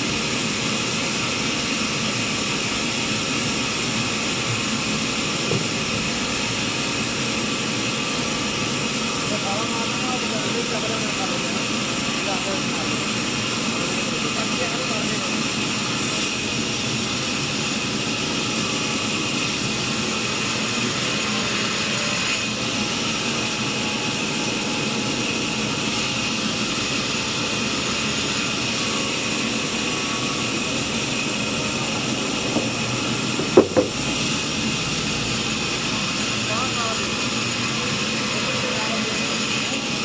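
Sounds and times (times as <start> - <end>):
sawmill saw running: 0.0 - 40.0
high steady whine: 28.5 - 36.0
sharp knocks: 32.5 - 34.2.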